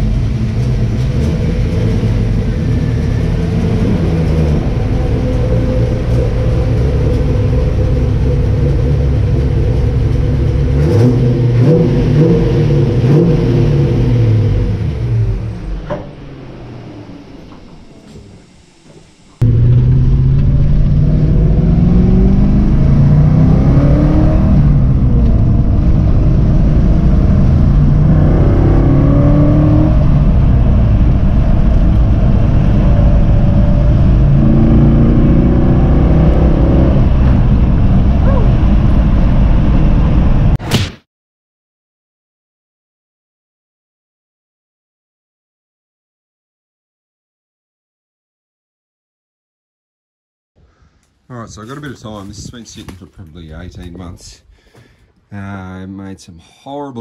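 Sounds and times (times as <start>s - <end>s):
car engine accelerating: 0.0s - 40.6s.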